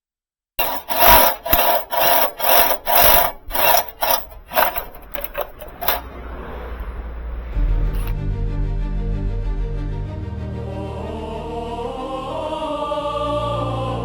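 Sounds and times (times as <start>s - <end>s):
file rasping on metal: 0.6s - 6.1s
music: 7.5s - 14.0s.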